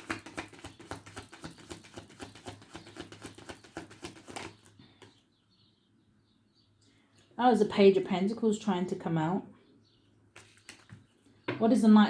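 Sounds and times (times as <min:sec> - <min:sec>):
cards being shuffled: 0:00.0 - 0:04.7, 0:10.4 - 0:11.0.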